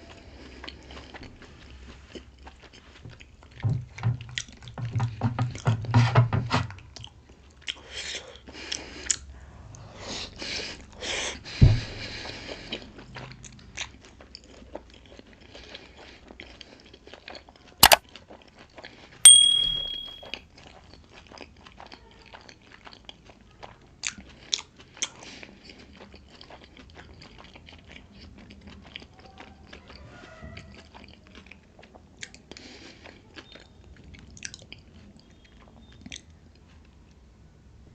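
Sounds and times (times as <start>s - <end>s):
sharp knock: 19.3s - 20.2s
ringing clink: 19.3s - 20.3s.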